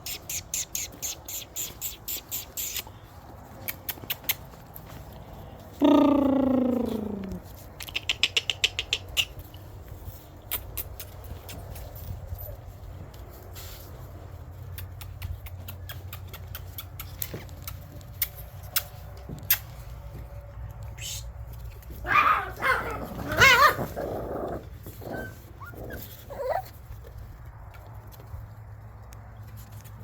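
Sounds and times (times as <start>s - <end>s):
puppy yelping: 21.8s - 24.0s, 24.9s - 26.8s
puppy growling and barking: 21.8s - 27.0s.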